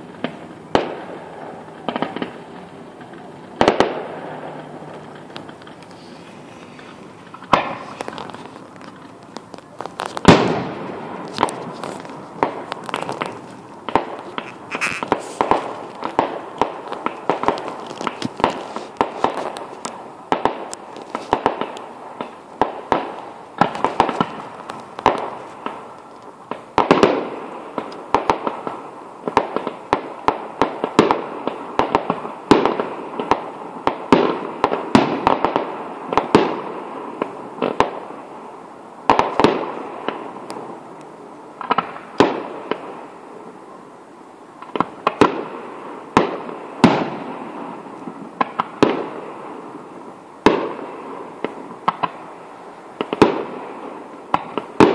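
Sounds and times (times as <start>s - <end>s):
firework crackle and echo: 0.0s - 54.9s
firework shells bursting: 4.9s - 27.2s.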